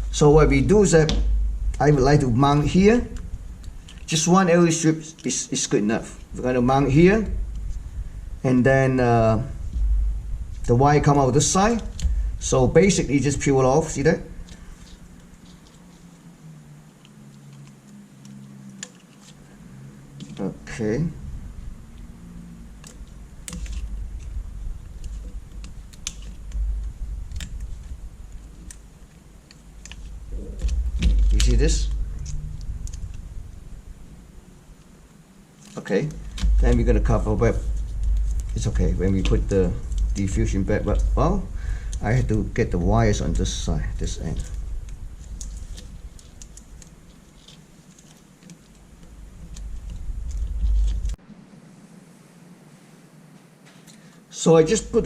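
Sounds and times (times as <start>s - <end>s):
dull low bumps: 0.0s - 4.1s, 9.2s - 14.4s, 20.7s - 28.9s, 29.8s - 35.0s, 36.2s - 47.1s
low handling rumble: 0.0s - 51.3s
small parts clicking: 17.0s - 19.4s, 22.8s - 33.2s.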